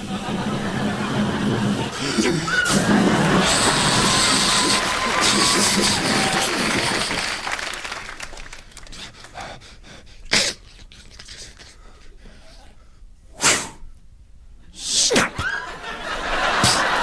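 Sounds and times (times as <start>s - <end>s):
mouth hissing rush into microphone: 0.0s - 7.6s
breathy mouth puffs: 0.0s - 14.0s.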